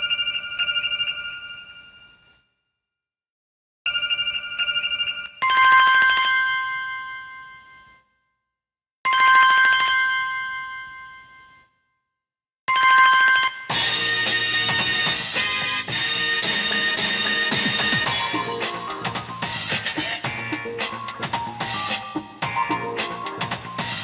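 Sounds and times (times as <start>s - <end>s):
phone ringtone chime: 0.0s - 2.2s, 3.9s - 8.0s, 9.1s - 11.6s, 12.7s - 24.0s
full-band ringtone with drums: 12.7s - 24.0s.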